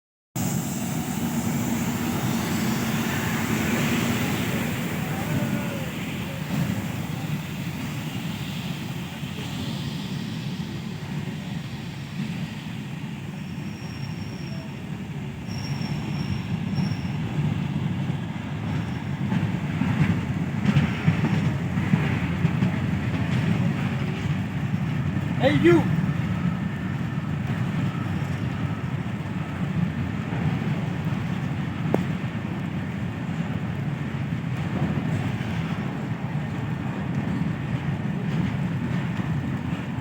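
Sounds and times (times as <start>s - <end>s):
train wheels rumbling on rail: 0.4s - 40.0s
high-pitched wheel squeals: 13.3s - 14.8s, 15.4s - 17.3s.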